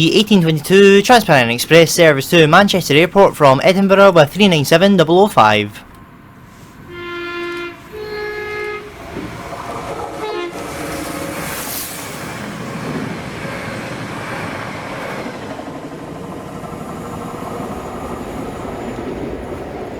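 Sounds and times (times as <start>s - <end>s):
train rushing past: 6.0s - 19.9s
two-tone train horn: 6.8s - 9.2s, 10.1s - 11.3s.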